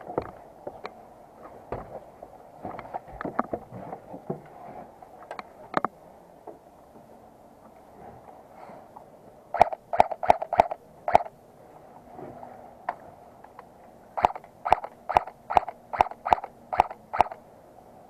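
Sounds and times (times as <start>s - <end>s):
airsoft gun shots: 9.6s - 11.3s, 14.2s - 17.4s.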